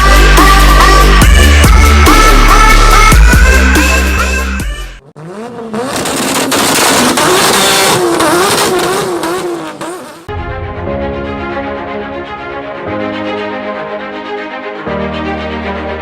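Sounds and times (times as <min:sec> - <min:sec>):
theme music: 0:00.0 - 0:04.8, 0:10.3 - 0:16.0
loud electronic music: 0:00.0 - 0:05.0
car engine revving hard: 0:05.0 - 0:10.3.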